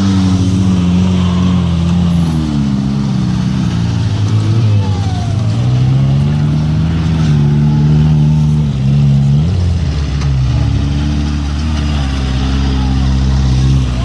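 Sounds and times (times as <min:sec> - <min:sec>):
off-road vehicle engines revving: 0:00.0 - 0:14.0.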